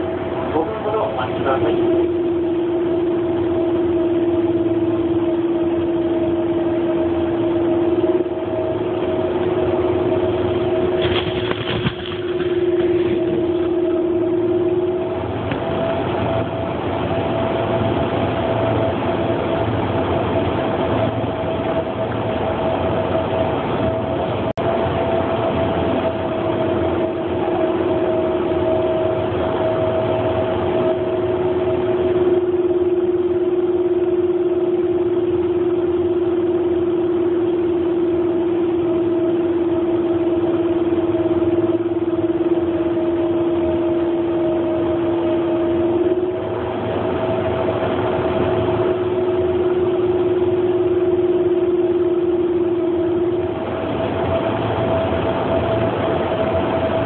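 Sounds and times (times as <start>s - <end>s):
train carriage running noise: 0.0s - 37.0s
steady hums: 0.0s - 57.0s.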